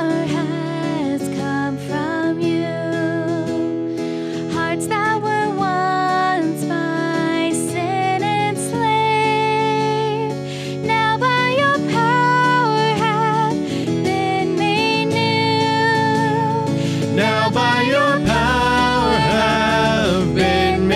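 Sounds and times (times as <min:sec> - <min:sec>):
acoustic guitar accompaniment: 0:00.0 - 0:20.9
sliding melody line: 0:16.8 - 0:20.9.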